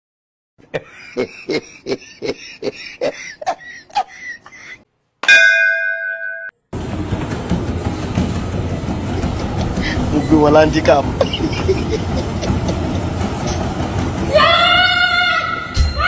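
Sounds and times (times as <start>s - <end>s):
bell-like ding: 5.2s - 6.6s
steady rumbling noise: 6.8s - 15.8s.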